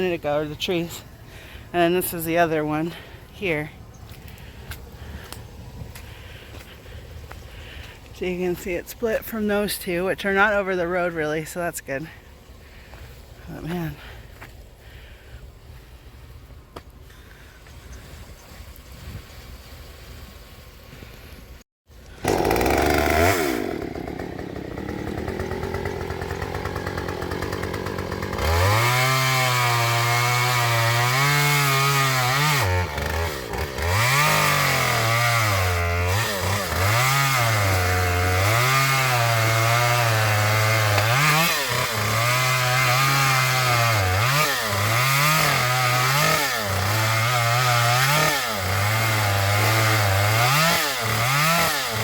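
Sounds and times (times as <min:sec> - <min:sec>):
chainsaw cutting wood: 0:22.0 - 0:52.0.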